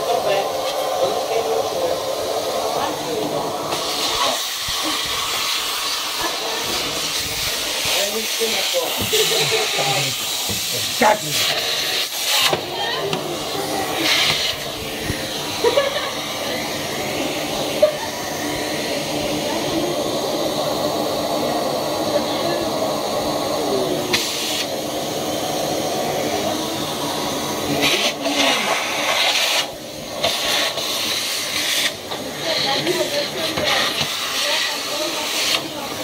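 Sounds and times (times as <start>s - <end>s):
vacuum cleaner motor whining: 0.0s - 36.0s.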